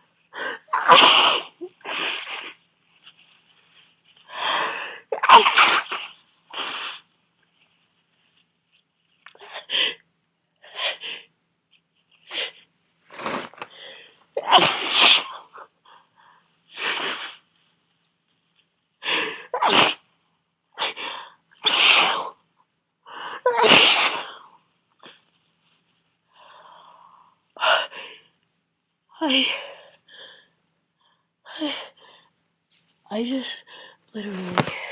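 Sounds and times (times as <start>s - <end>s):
person sneezing: 0.5s - 2.4s, 5.2s - 6.9s, 14.4s - 15.4s, 19.5s - 20.0s, 21.6s - 22.3s, 23.5s - 24.4s, 34.3s - 34.9s.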